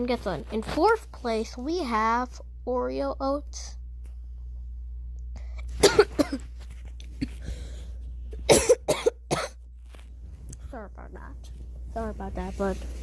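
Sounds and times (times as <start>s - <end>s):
person coughing: 5.8s - 6.6s, 7.2s - 7.7s, 8.3s - 9.6s.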